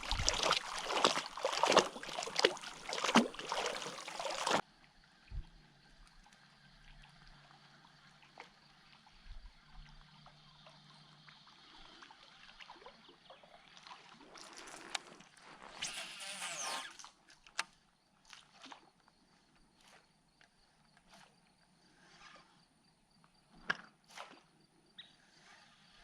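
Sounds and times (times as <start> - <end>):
water trickling and sloshing: 0.0 - 15.9.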